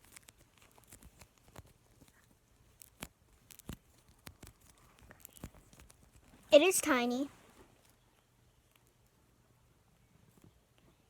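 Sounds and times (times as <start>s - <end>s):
slime crackling and clicking: 0.0s - 6.2s.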